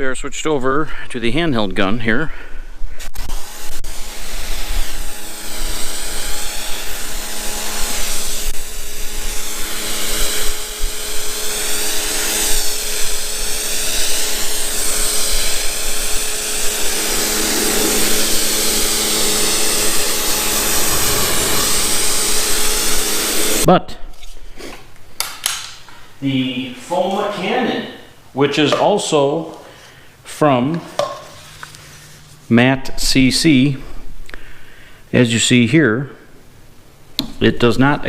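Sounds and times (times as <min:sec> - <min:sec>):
pressure washer pump hum: 0:10.4 - 0:23.7
water spray hissing: 0:13.4 - 0:23.7.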